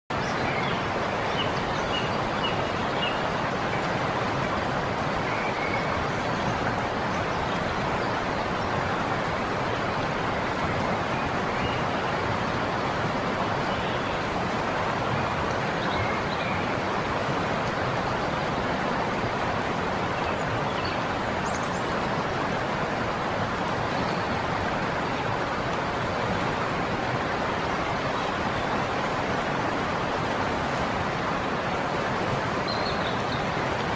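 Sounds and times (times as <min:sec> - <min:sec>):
river water rushing: 0:00.1 - 0:33.9.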